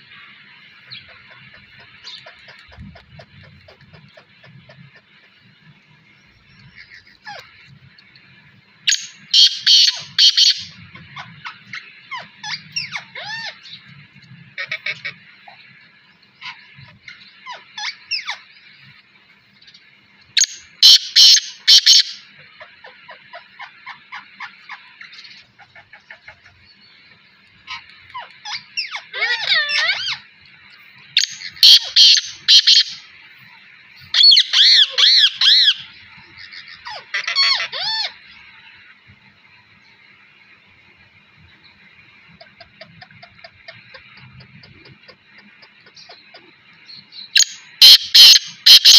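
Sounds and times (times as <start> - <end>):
loud harsh bird calls: 0.0 - 48.9
bird chirps and whistles: 8.9 - 10.7, 20.4 - 22.2, 31.2 - 33.0, 47.2 - 48.9.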